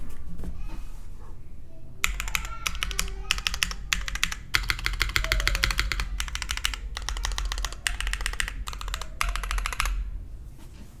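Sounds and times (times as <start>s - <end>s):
mechanical keyboard typing: 2.0s - 10.2s.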